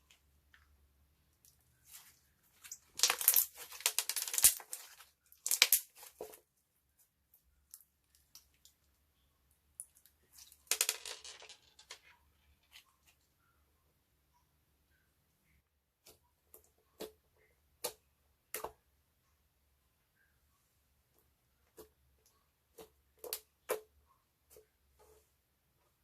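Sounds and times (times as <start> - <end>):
slime crackling and popping: 2.7 - 6.2.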